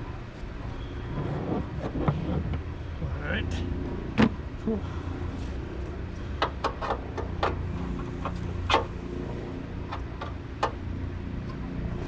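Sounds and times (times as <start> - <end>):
steady low rumble: 0.0 - 12.0
hard parts clicking and knocking: 6.4 - 9.0.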